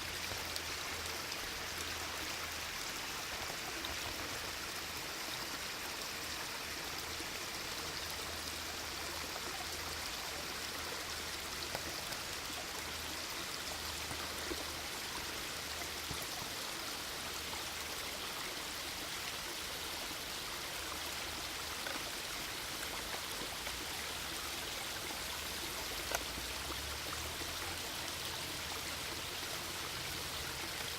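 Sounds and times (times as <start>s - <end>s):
water flowing: 0.0s - 30.9s
faint ticks: 11.6s - 12.2s.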